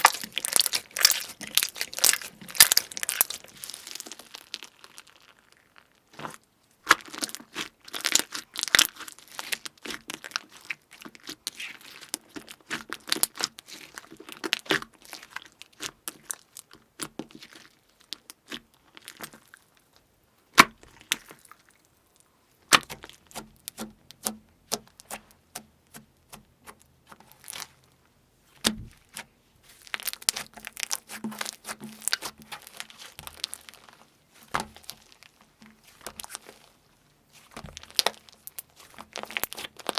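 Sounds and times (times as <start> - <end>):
slime crackling and snapping: 0.0 - 17.6, 27.2 - 27.8, 29.8 - 36.8, 37.4 - 39.9.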